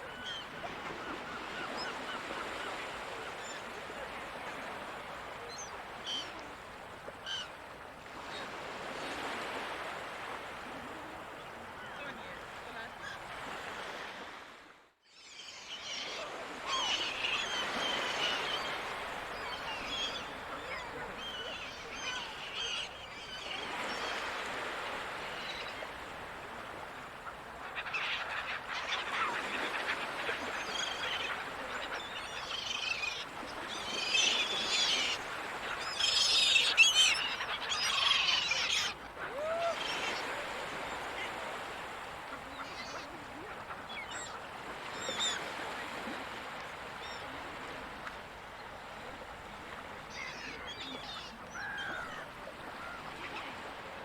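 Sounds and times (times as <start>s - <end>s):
ocean surf: 0.0s - 14.8s, 15.7s - 54.0s
seagulls calling: 15.4s - 26.0s, 26.7s - 46.1s, 50.1s - 53.9s.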